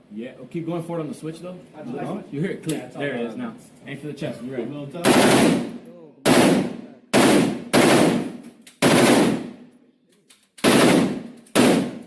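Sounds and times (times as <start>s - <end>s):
automatic gunfire bursts: 5.0s - 9.6s, 10.6s - 12.0s.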